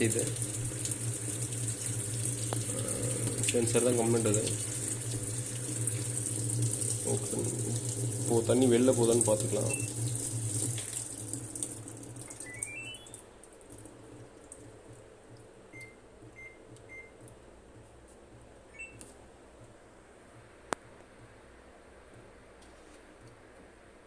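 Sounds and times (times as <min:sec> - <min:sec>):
water running into washing machine: 0:00.0 - 0:15.0
control panel beeps: 0:09.6 - 0:10.0, 0:12.4 - 0:13.2, 0:15.7 - 0:17.2, 0:18.7 - 0:19.0.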